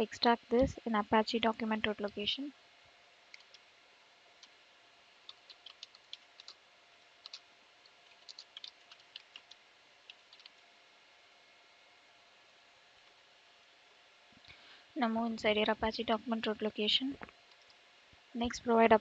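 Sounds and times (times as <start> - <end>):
computer keyboard typing: 3.4 - 3.6, 5.2 - 6.6, 7.2 - 7.4, 8.0 - 10.6.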